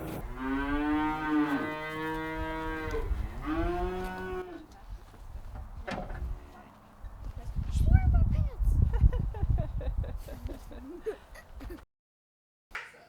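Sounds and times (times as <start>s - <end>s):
cattle mooing: 0.0s - 4.6s.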